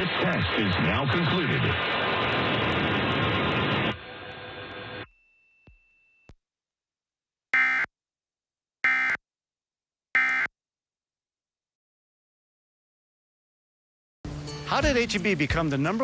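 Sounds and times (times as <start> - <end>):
buzzy digital data bursts: 7.6 - 7.9.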